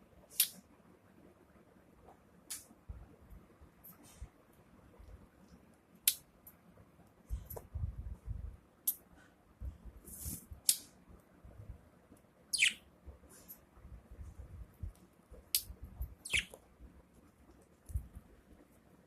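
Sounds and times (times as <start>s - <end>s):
soft low thumps: 7.3s - 8.6s
budgerigar squeaks and clicks: 12.5s - 12.8s, 16.2s - 16.6s.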